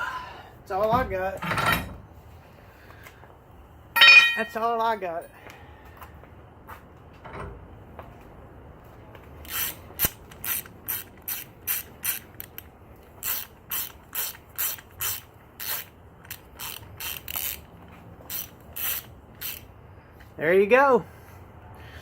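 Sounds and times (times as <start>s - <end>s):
ratchet clicking: 9.4s - 19.7s.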